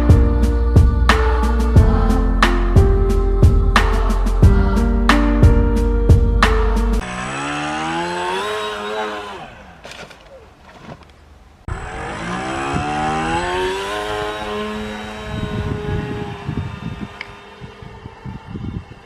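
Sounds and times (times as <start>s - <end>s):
model plane motor and propeller: 7.0s - 10.4s, 11.7s - 19.0s.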